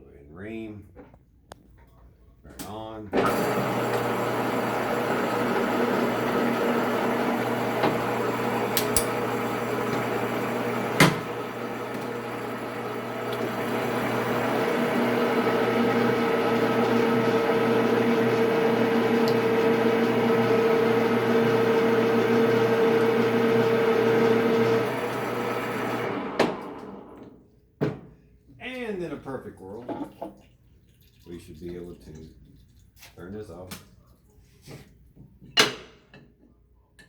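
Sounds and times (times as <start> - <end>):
pipe threading machine motor hum: 3.2 - 27.4.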